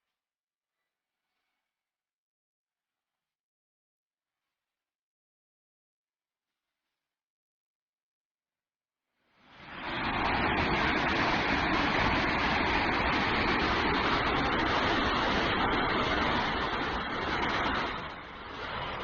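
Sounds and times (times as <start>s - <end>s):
waterfall rushing: 9.6s - 19.0s.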